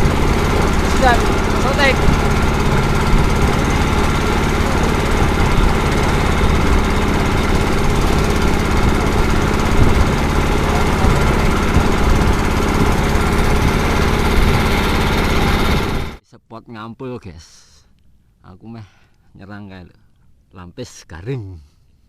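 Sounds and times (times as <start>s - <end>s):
small boat engine chugging: 0.0s - 16.2s.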